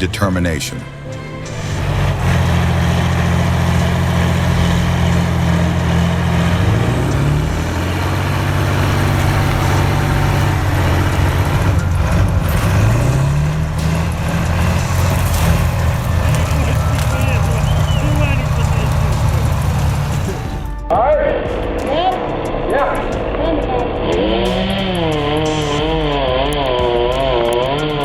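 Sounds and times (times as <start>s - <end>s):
diesel tractor engine droning: 0.0s - 20.9s, 21.5s - 28.0s.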